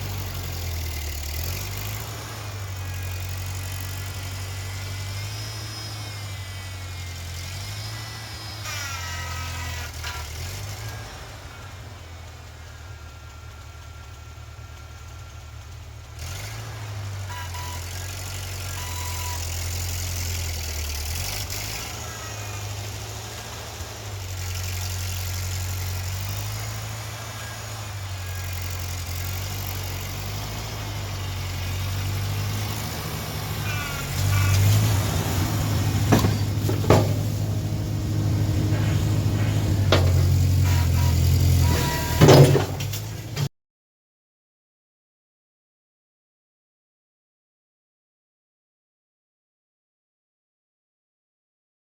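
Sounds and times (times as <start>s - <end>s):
engine running: 0.0s - 43.5s
sharp knocks: 36.0s - 37.5s, 38.7s - 40.6s.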